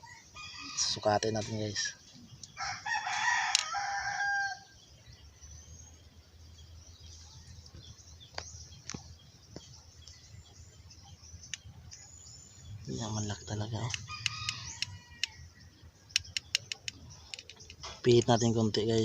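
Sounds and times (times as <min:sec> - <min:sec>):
faint sharp clicks: 0:11.5 - 0:12.1, 0:16.1 - 0:19.0.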